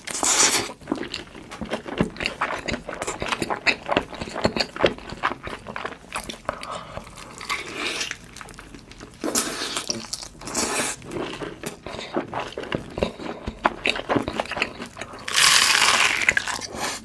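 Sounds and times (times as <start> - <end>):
person chewing crispy food: 0.0 - 17.0
loud crunches: 15.2 - 17.0.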